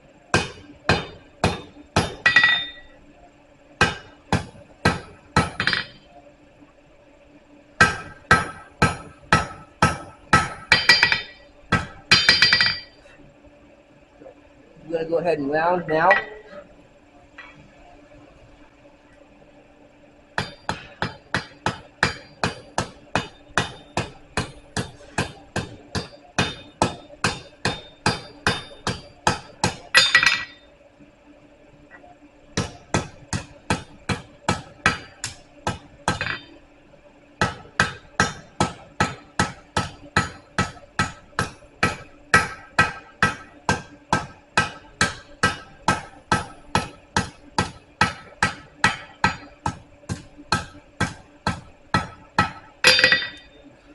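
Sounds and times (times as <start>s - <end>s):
hammer striking hot steel on anvil: 0.3s - 3.0s, 3.8s - 6.1s, 7.8s - 13.0s, 15.9s - 16.5s, 20.4s - 30.7s, 32.6s - 36.6s, 37.4s - 53.6s.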